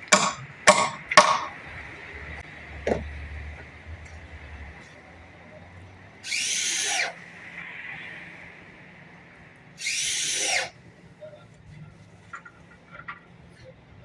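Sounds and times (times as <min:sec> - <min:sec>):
power tool motor whine: 0:06.2 - 0:07.2, 0:09.8 - 0:10.7.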